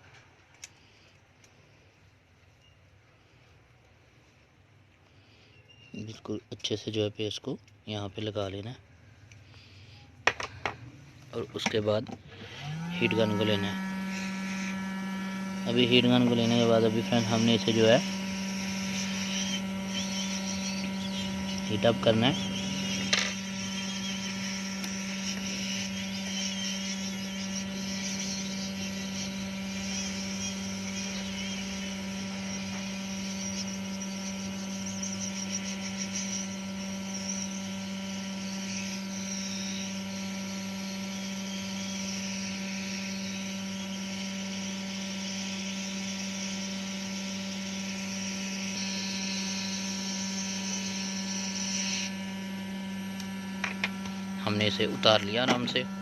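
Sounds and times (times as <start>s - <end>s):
steady electrical hum: 0.0s - 56.0s
heat gun blowing air: 12.2s - 55.8s.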